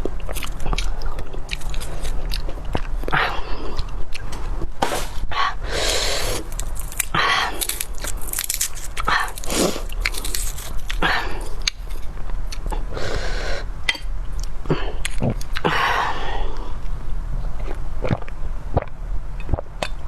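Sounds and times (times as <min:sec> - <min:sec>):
person chewing food: 0:00.0 - 0:05.1, 0:05.9 - 0:13.6, 0:14.3 - 0:20.0
mouth clicks and smacking: 0:14.4 - 0:15.9, 0:17.6 - 0:20.0.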